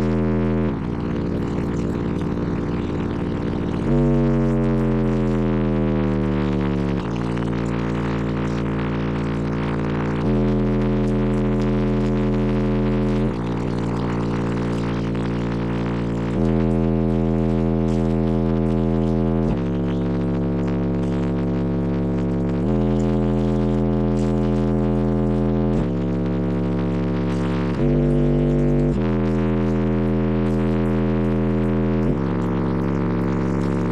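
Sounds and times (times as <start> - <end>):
car subwoofers playing heavy bass: 0.0 - 33.9.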